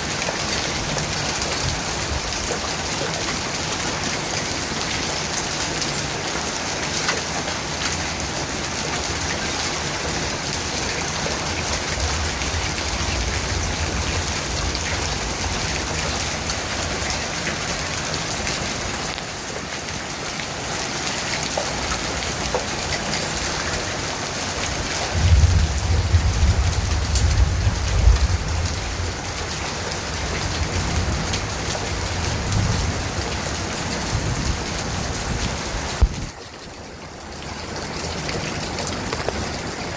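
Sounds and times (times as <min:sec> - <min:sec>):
heavy rain pouring: 0:00.0 - 0:39.9
thunder rumbling: 0:11.6 - 0:17.0, 0:25.1 - 0:29.5.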